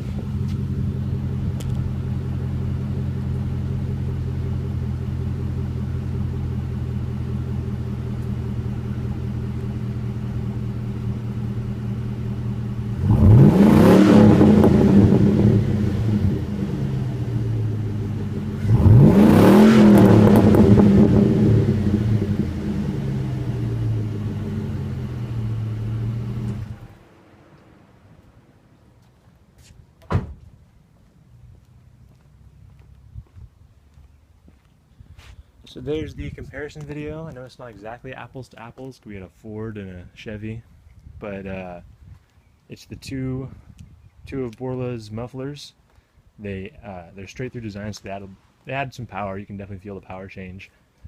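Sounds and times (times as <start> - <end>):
truck engine idling and revving: 0.0 - 28.4.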